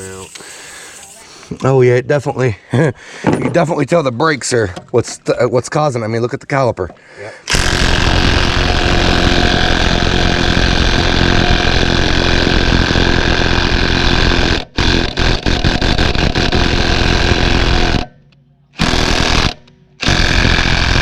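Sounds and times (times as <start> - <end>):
impact wrench hammering: 7.5 - 21.0.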